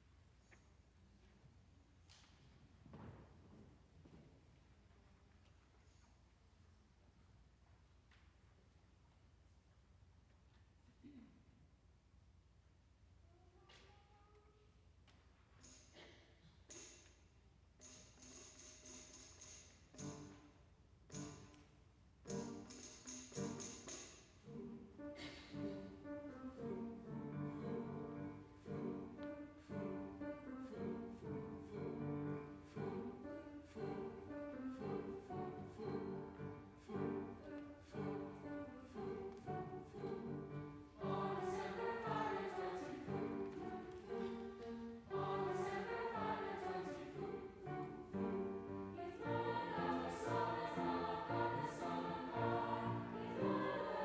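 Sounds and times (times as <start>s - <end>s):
choir singing with instruments: 22.3s - 54.0s.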